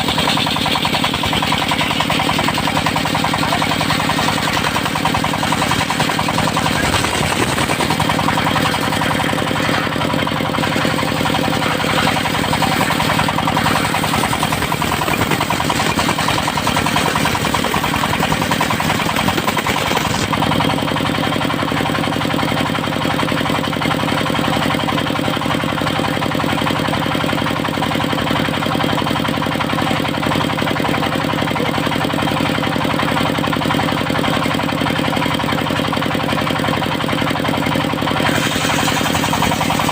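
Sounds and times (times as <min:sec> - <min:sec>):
saw blade cutting wood: 0:00.0 - 0:21.0, 0:38.1 - 0:39.9
sawmill engine running: 0:00.0 - 0:39.9.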